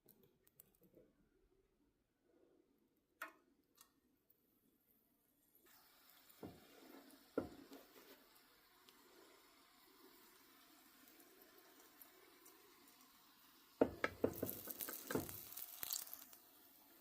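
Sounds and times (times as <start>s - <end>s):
batter frying in hot oil: 5.5s - 17.0s
utensil knocking against pan: 13.8s - 15.4s.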